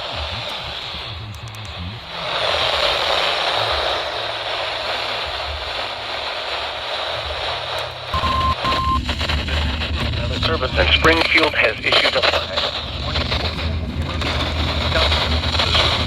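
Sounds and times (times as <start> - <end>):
radio static hiss: 0.0 - 16.0
short beeps: 8.2 - 9.0.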